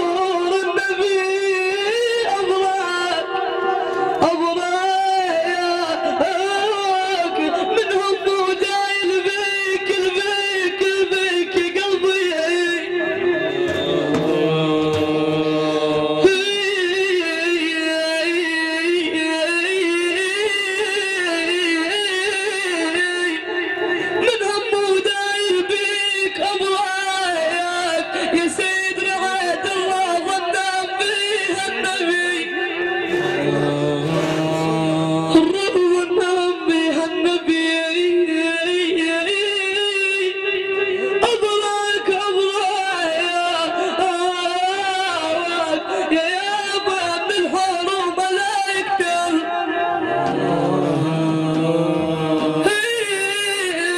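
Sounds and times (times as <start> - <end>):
man chanting a religious song: 0.0 - 53.9
man singing long note: 12.4 - 24.3, 32.7 - 41.2, 49.3 - 53.9
sharp knock: 34.0 - 35.0.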